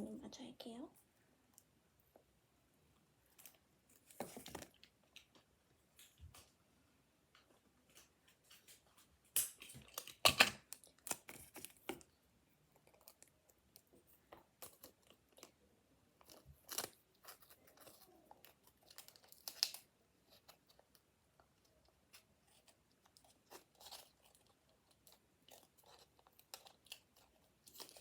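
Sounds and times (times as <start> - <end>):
paper and cardboard crinkling: 3.3 - 4.9, 8.0 - 12.1, 12.7 - 28.0.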